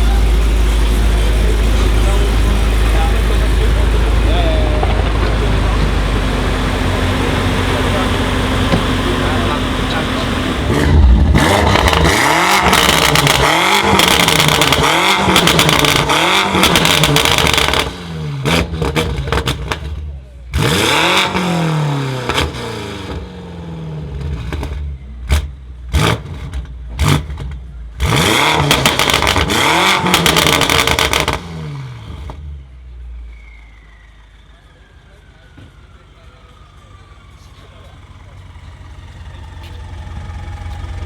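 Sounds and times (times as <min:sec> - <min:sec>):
car engine revving: 0:00.0 - 0:34.0
exhaust pops and crackles: 0:10.8 - 0:20.7, 0:24.2 - 0:31.6.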